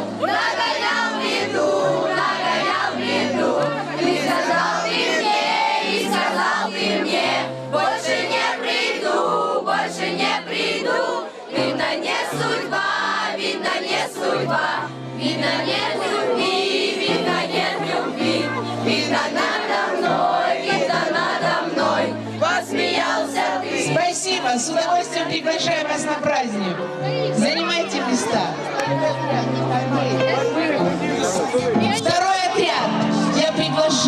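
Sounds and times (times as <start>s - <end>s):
children singing: 0.0s - 24.0s
instrumental backing track: 24.9s - 33.8s.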